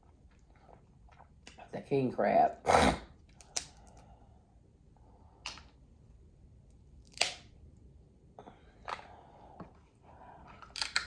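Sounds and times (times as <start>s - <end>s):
crab shell cracking: 7.0s - 7.5s, 10.6s - 11.0s.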